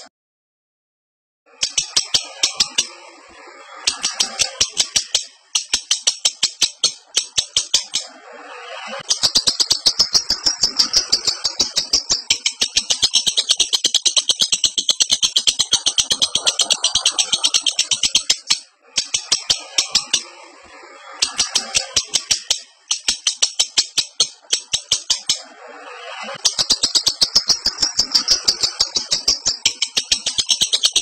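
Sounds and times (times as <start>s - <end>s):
lovebird chattering: 1.5s - 3.1s, 3.7s - 20.3s, 21.1s - 31.0s.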